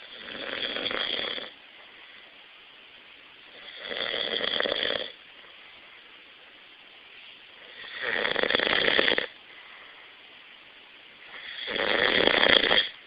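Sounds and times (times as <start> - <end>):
person snoring loudly: 0.0 - 1.6, 3.5 - 5.2, 7.7 - 9.4, 11.3 - 13.0.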